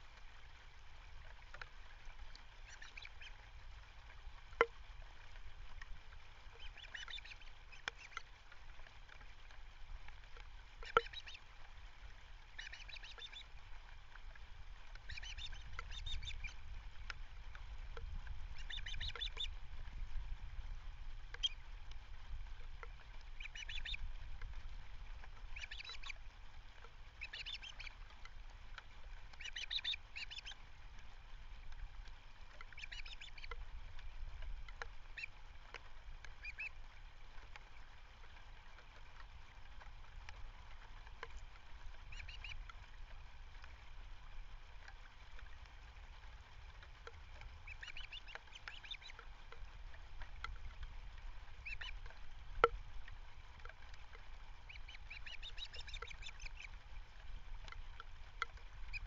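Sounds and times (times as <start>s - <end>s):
osprey chirping: 2.7s - 3.3s, 6.6s - 8.2s, 10.8s - 11.4s, 12.6s - 13.4s, 15.1s - 16.6s, 18.6s - 19.5s, 21.4s - 21.6s, 23.4s - 24.0s, 25.5s - 26.1s, 27.2s - 28.0s, 29.4s - 30.6s, 32.6s - 33.6s, 36.4s - 36.7s, 42.1s - 42.6s, 47.6s - 49.2s, 51.6s - 52.0s, 54.7s - 56.7s.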